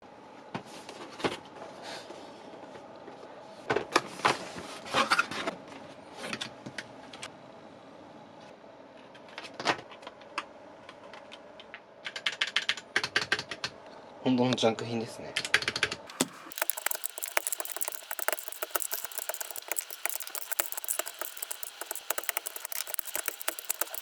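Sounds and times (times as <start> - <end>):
computer keyboard clicks and clatter: 12.0 - 13.7, 15.4 - 24.0.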